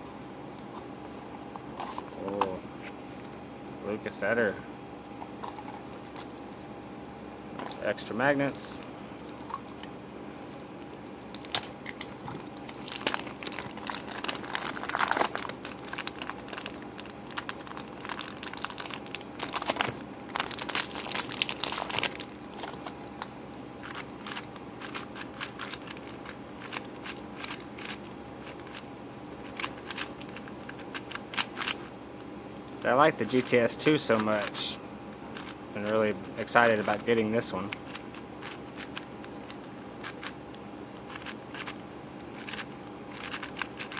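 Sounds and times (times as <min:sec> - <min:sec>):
wrappers crinkling and rustling: 0:11.3 - 0:23.0.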